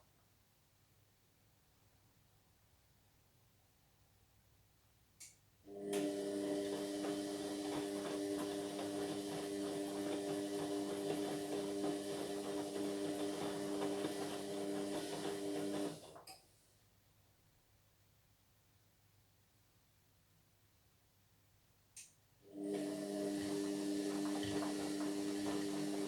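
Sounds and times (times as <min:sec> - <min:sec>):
washing machine running: 0:05.7 - 0:16.3, 0:22.5 - 0:26.0.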